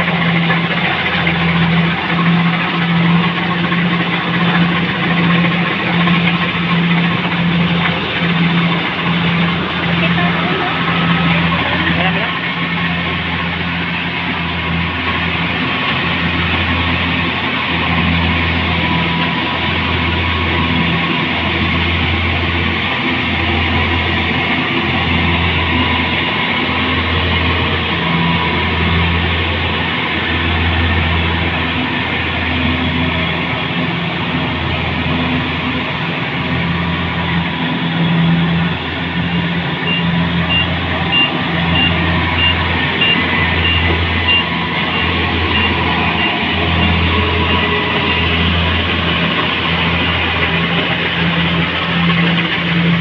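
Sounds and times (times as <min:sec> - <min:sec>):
machine engine throbbing: 0:00.0 - 0:53.0
reversing alarm beeping: 0:38.2 - 0:52.2.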